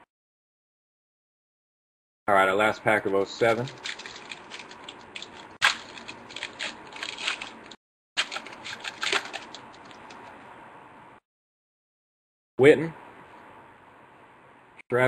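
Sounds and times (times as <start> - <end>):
wrapper crinkling: 3.4 - 10.3
wrapper ripping: 3.5 - 10.2.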